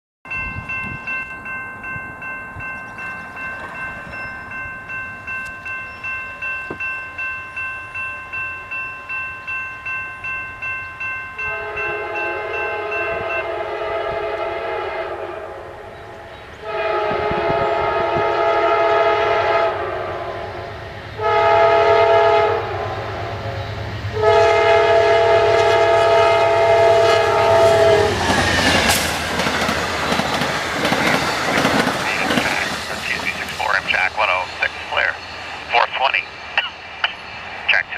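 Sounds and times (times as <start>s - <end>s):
bell ringing: 0.3s - 13.5s
train clattering past: 0.3s - 37.9s
train horn: 11.4s - 29.0s.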